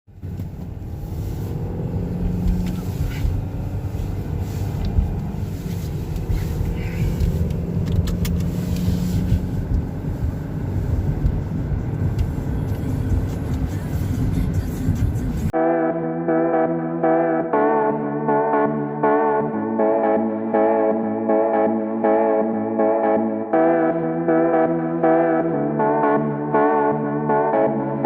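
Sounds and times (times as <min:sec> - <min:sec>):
car engine hum: 0:00.1 - 0:15.6
road noise: 0:00.1 - 0:15.6.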